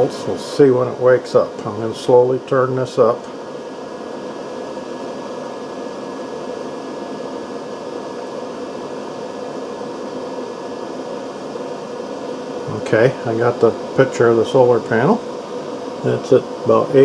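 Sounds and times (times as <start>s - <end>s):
fan whirring: 0.0s - 17.0s.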